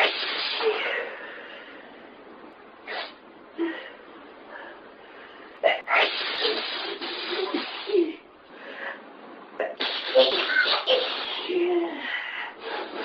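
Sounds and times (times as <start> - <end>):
person sneezing: 0.0 - 1.1, 5.6 - 8.2, 9.6 - 12.0.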